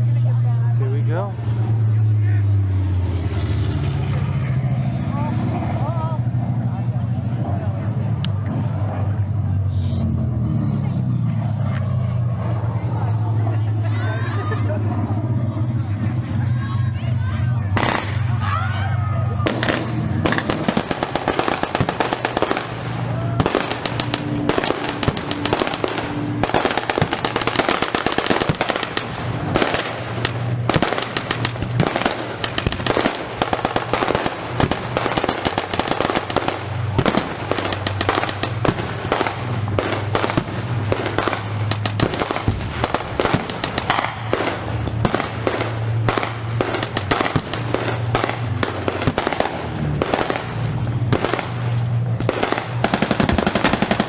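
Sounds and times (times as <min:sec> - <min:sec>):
gunfire-like cracks and pops: 0:41.7 - 0:45.4.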